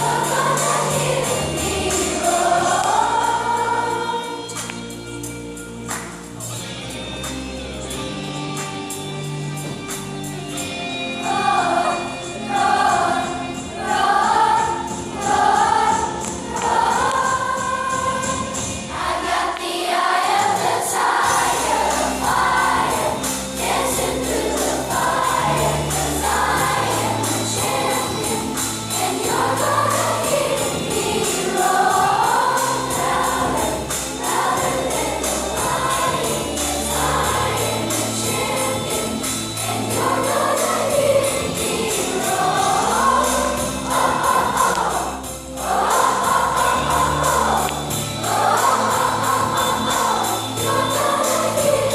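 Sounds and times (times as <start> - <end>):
children's choir singing: 0.0 - 5.4, 9.6 - 51.9
jingling percussion: 0.0 - 8.1, 20.4 - 51.9.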